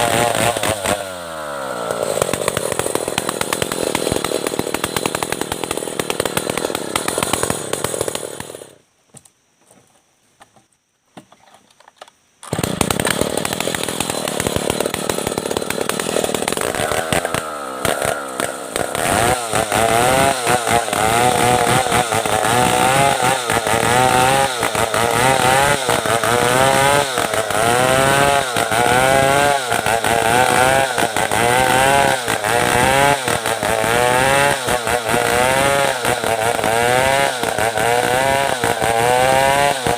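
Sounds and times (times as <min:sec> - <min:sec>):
chainsaw sawing hardwood: 0:00.0 - 0:08.8, 0:12.5 - 0:39.9.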